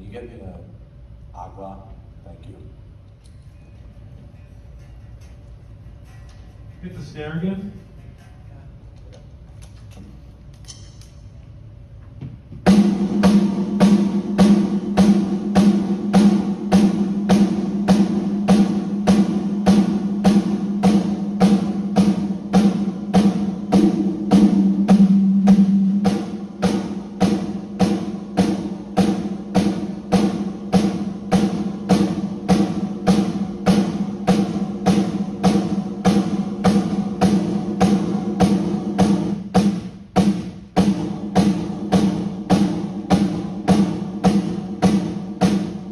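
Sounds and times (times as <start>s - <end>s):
snare drum hits: 12.6s - 45.9s.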